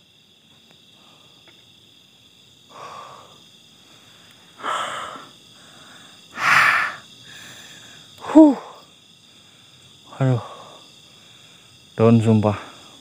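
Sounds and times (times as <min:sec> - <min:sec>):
insect chirring: 0:00.0 - 0:13.0
heavy noisy breaths: 0:02.7 - 0:13.0.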